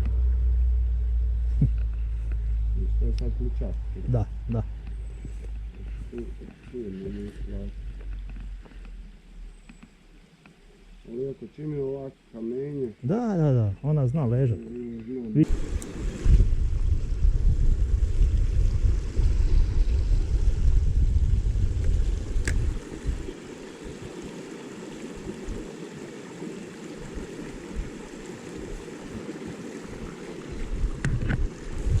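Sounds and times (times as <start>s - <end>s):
stream running over stones: 1.8s - 32.0s
faint clicks: 9.6s - 10.6s
wind buffeting microphone: 15.4s - 24.3s, 27.0s - 32.0s.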